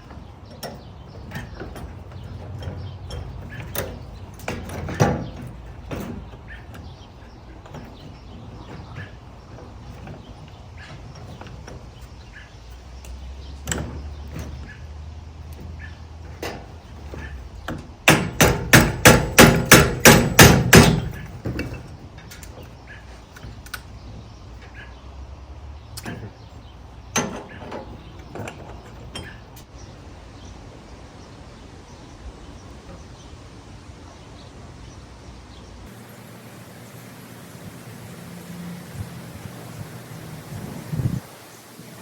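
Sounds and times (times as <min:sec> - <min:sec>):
knocks of tools and parts: 0:00.0 - 0:07.0, 0:13.0 - 0:14.7, 0:15.6 - 0:23.9
rapid hammering: 0:18.0 - 0:21.2.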